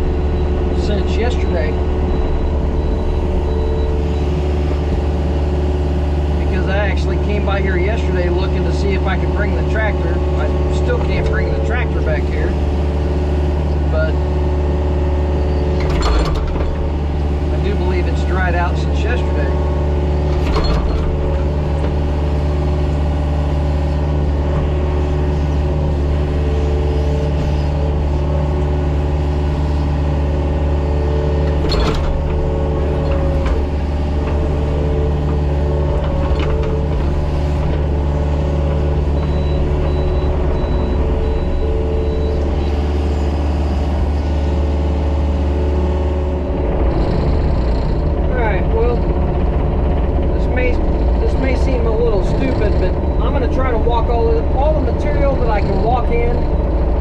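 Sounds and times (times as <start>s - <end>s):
excavator diesel engine running: 0.0s - 57.0s.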